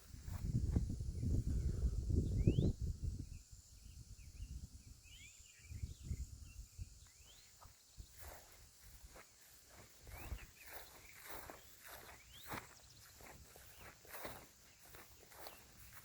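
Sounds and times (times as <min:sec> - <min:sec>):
rising bird chirps: 0:02.2 - 0:08.1, 0:10.1 - 0:16.0
footsteps on dirt trail: 0:07.3 - 0:16.0.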